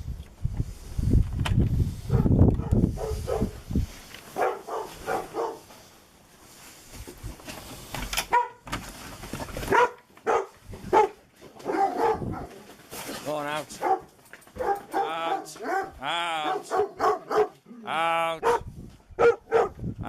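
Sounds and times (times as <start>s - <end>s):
dogs barking: 2.1s - 3.6s, 4.3s - 5.7s, 8.3s - 8.6s, 9.6s - 12.6s, 13.7s - 17.7s, 18.4s - 19.8s.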